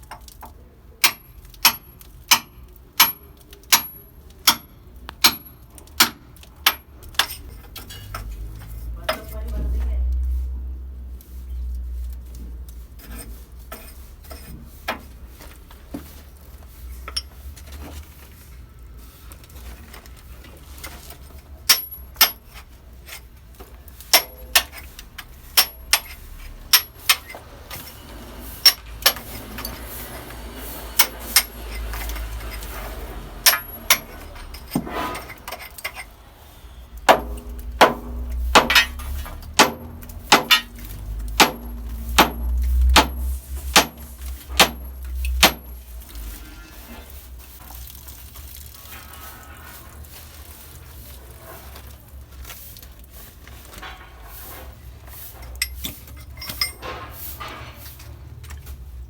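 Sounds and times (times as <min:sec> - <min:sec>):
metal tools striking and clinking: 0:01.0 - 0:09.3, 0:24.0 - 0:28.0, 0:28.6 - 0:29.9, 0:31.0 - 0:36.1, 0:37.0 - 0:45.9, 0:55.4 - 0:57.1.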